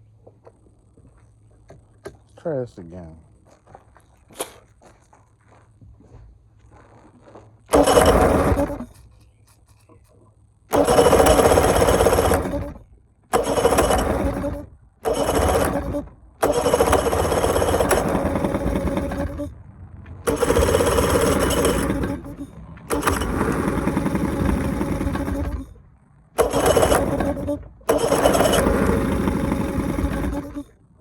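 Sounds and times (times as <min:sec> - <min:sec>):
outboard motor starting: 0:07.7 - 0:09.1, 0:10.7 - 0:19.6, 0:20.2 - 0:30.8.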